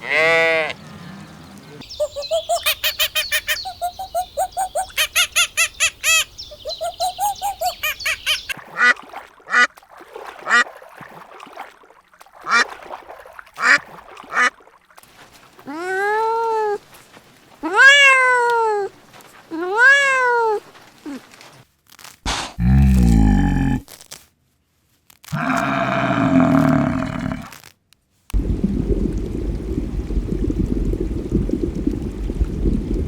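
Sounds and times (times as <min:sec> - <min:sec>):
fowl honking calls: 0:01.9 - 0:08.9.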